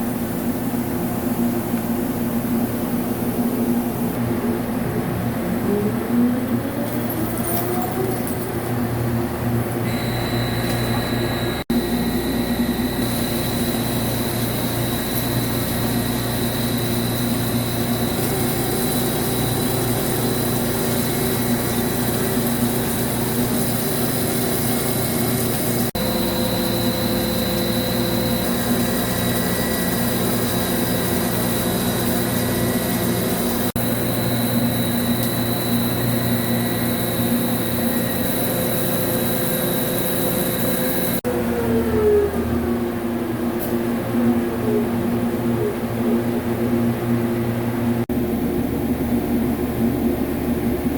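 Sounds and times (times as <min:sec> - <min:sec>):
high machine whine: 0:00.8 - 0:50.9
lathe machine drone: 0:09.8 - 0:41.8.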